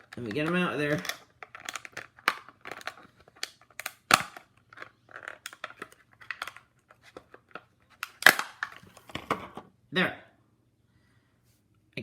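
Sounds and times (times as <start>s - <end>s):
plastic packaging crackling: 0.0s - 9.2s
plastic snapping: 0.0s - 9.4s.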